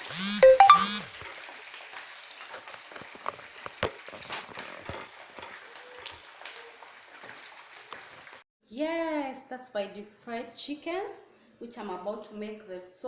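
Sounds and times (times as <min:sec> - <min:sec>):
chicken sizzling in hot oil: 0:01.1 - 0:08.4.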